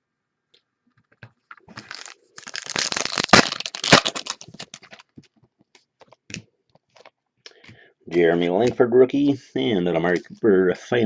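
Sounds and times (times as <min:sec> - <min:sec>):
wrapper crinkling and tearing: 0:01.5 - 0:05.1
sharp cracks: 0:01.8 - 0:05.0.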